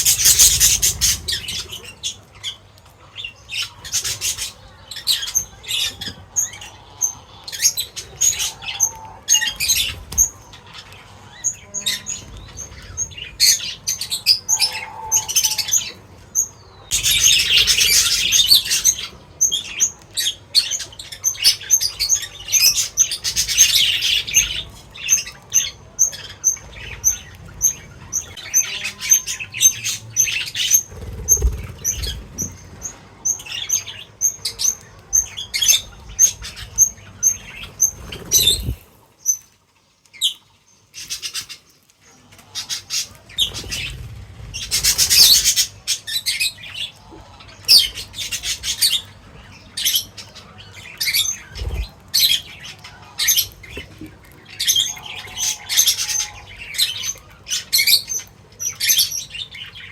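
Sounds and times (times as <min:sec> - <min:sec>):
wing flutters: 0:00.0 - 0:01.8, 0:30.5 - 0:32.9, 0:36.2 - 0:39.1, 0:43.3 - 0:45.7, 0:51.4 - 0:52.4.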